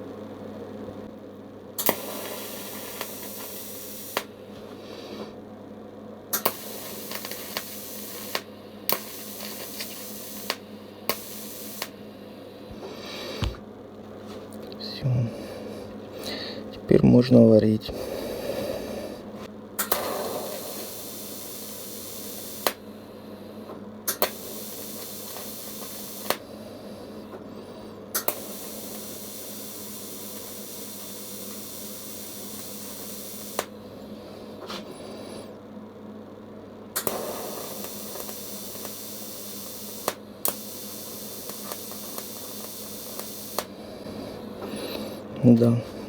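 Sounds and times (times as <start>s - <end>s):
sharp welder clicks: 1.8s - 4.4s, 6.3s - 12.0s, 19.8s - 22.8s, 24.1s - 26.4s, 28.1s - 33.8s, 37.0s - 43.7s
welding arc hissing: 1.8s - 5.3s, 6.3s - 13.6s, 19.8s - 23.0s, 24.1s - 26.5s, 28.1s - 33.8s, 37.0s - 44.9s.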